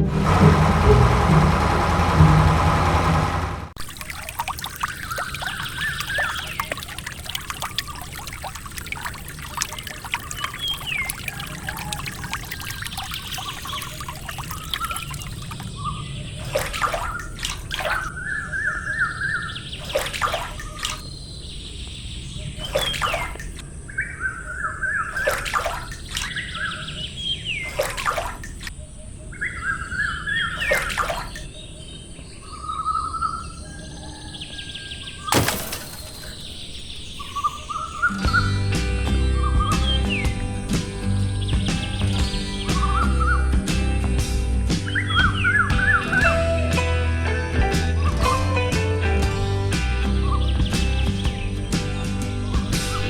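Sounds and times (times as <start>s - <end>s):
trickle of running water: 3.8s - 15.8s, 35.3s - 38.4s
birds singing trills: 4.8s - 27.9s, 28.6s - 46.8s, 50.0s - 53.0s.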